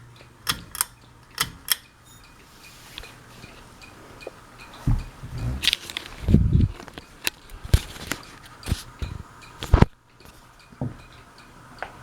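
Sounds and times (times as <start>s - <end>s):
irregular knocks and clicks: 4.2s - 11.1s
low rumbling thump: 4.9s - 5.6s.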